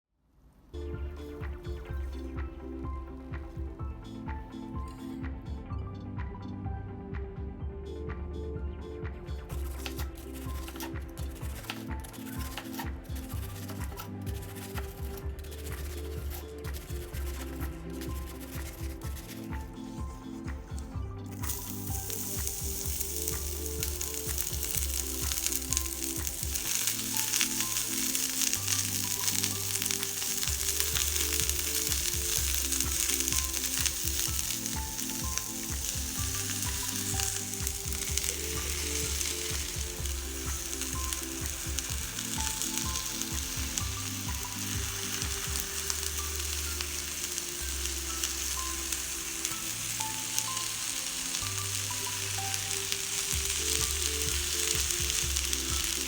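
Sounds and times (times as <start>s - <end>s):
soft background music: 0.4s - 56.0s
food sizzling in oil: 9.5s - 19.6s, 21.4s - 56.0s.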